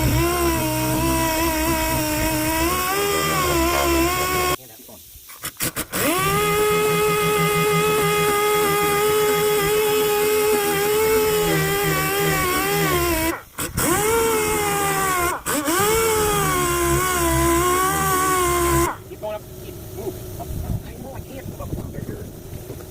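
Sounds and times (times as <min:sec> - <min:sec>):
power sander on metal: 0:00.0 - 0:04.6, 0:05.4 - 0:22.9.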